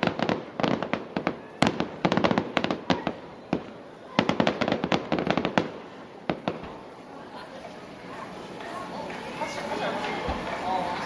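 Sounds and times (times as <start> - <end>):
fireworks bursting: 0.0 - 11.0.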